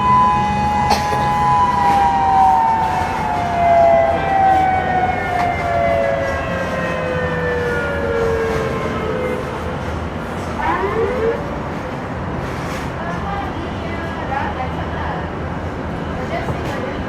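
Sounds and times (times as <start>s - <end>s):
siren winding down: 0.0s - 9.7s.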